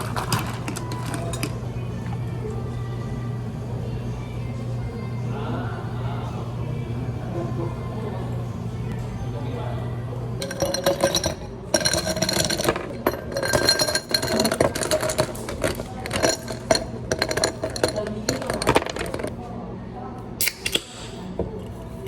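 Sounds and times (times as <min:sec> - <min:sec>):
ice cubes clinking in glass: 0:00.0 - 0:01.6, 0:10.4 - 0:19.3
low hum of cafe equipment: 0:00.0 - 0:22.0.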